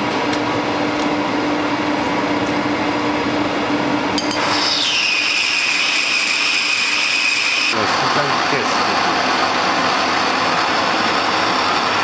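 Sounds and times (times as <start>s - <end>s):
high whine falling in pitch: 0.0s - 12.0s
metal lathe running: 4.1s - 12.0s.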